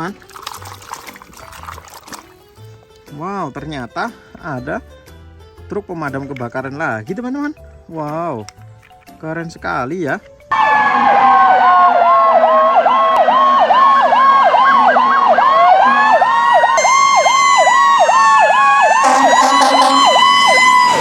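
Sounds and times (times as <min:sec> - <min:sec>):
fire truck siren yelping and wailing: 0:10.5 - 0:21.0.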